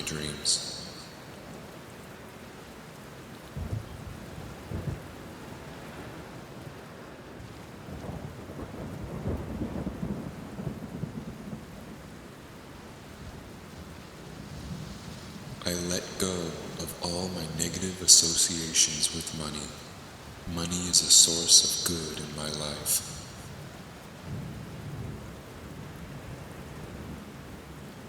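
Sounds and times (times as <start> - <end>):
thunder rumbling: 0.0 - 1.6, 7.8 - 12.3, 13.0 - 27.2
steady rain: 0.0 - 28.0.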